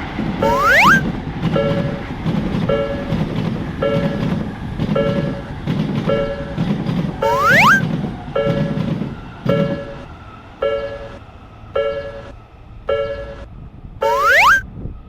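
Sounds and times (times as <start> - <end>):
low rumble of train: 0.0 - 14.0, 14.6 - 15.0
rising whistle-like sweep: 0.4 - 1.1, 7.2 - 7.9, 14.0 - 14.6
crossing signal tones: 0.4 - 2.1, 7.2 - 8.9, 9.5 - 11.2, 11.8 - 14.6.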